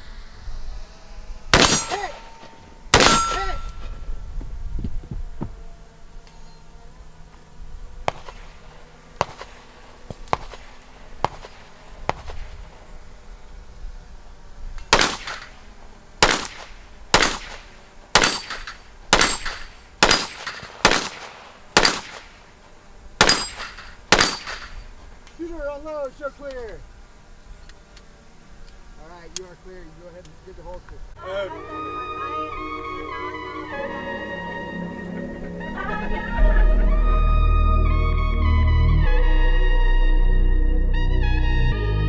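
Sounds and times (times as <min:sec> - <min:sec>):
gunshots: 0:01.5 - 0:04.0, 0:08.1 - 0:08.6, 0:09.2 - 0:12.6, 0:14.9 - 0:15.6, 0:16.2 - 0:22.5, 0:23.2 - 0:24.9
steel target ringing: 0:01.5 - 0:04.0, 0:18.2 - 0:21.2, 0:23.2 - 0:24.9.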